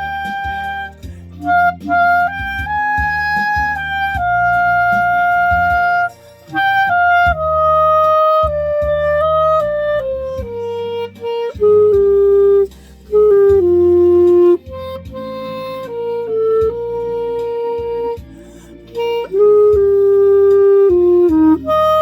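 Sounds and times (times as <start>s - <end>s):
bass line: 0.0s - 22.0s
clarinet melody: 0.0s - 22.0s
light percussion: 0.0s - 22.0s.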